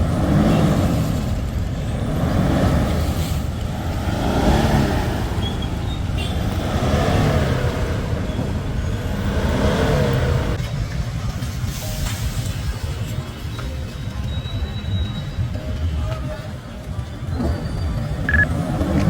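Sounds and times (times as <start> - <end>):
diesel engine revving: 0.0 - 12.8, 17.2 - 19.0.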